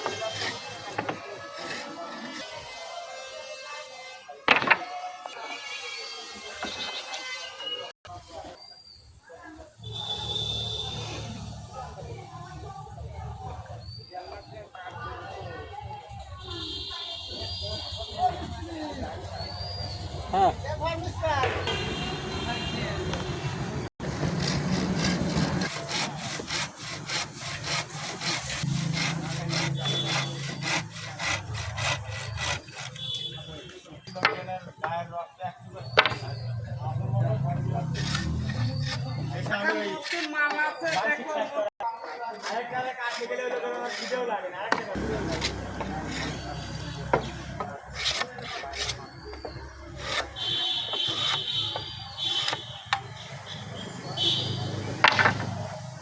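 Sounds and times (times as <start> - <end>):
hand saw cutting wood: 0.0 - 2.9, 24.0 - 33.3, 37.6 - 41.2, 41.8 - 53.0
wood being rasped: 0.0 - 3.6, 24.0 - 33.4, 37.4 - 41.2, 41.8 - 54.4.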